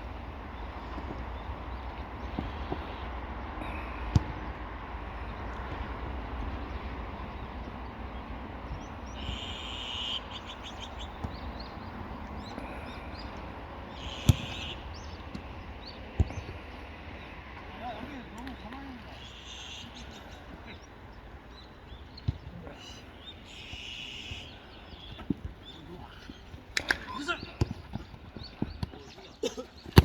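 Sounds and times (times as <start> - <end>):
football being kicked: 4.1 - 4.5, 11.1 - 11.6, 14.2 - 14.7, 27.6 - 27.9.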